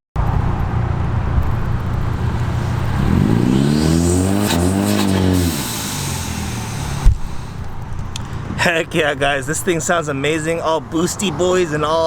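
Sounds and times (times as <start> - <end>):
car engine accelerating: 0.2 - 8.1.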